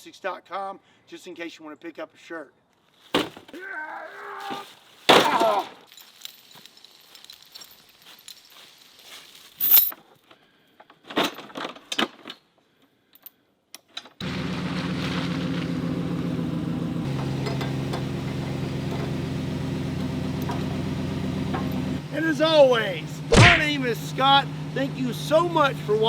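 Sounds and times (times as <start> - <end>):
engine idling: 14.2 - 26.0
sharp knocks and clatter: 20.0 - 22.0.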